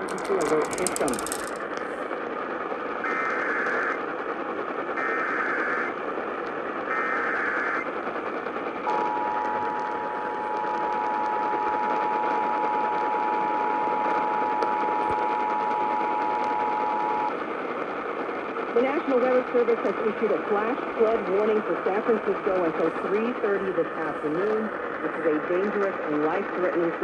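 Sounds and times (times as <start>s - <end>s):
radio static hiss: 0.0s - 1.9s, 8.9s - 17.4s, 18.7s - 27.0s.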